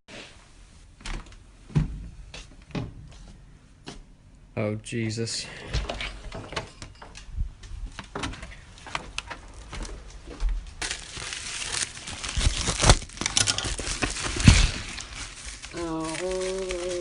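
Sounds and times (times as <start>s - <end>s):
packaging crinkling and tearing: 10.8s - 17.0s.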